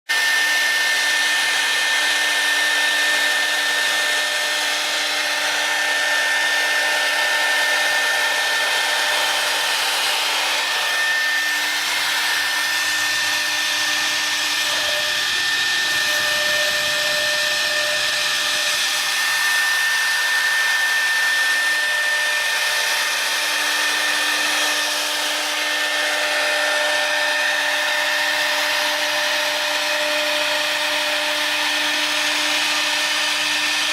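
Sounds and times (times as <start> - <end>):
router cutting noise: 0.1 - 33.9
router spindle whine: 0.1 - 33.9.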